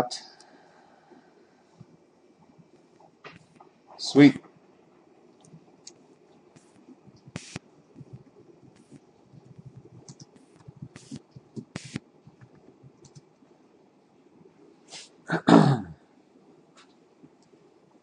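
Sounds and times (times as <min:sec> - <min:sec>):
computer keyboard typing: 0:08.8 - 0:11.9, 0:13.0 - 0:13.2.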